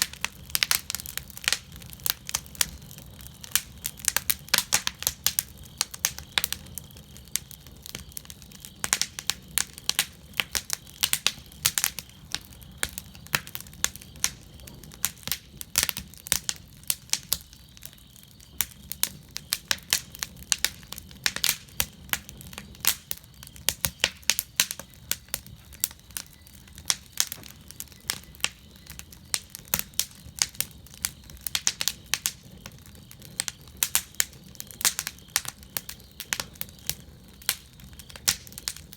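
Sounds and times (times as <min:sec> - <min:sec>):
fire crackling and popping: 0:00.0 - 0:38.9.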